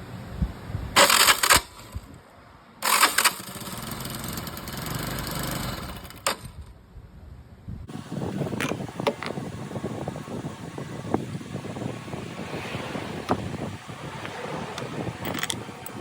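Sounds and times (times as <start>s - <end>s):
motorcycle starter motor grinding: 1.0s - 2.1s, 2.8s - 6.7s
mechanical running: 2.8s - 6.6s.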